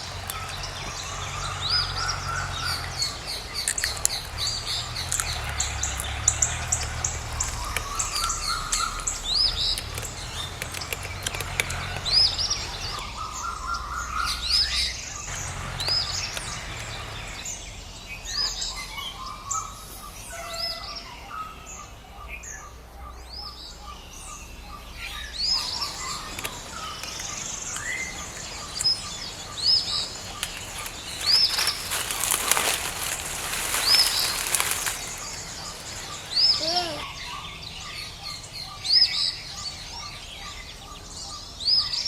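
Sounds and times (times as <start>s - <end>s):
rapid low bird trill: 0.0s - 13.4s
birds chirping: 0.0s - 42.0s.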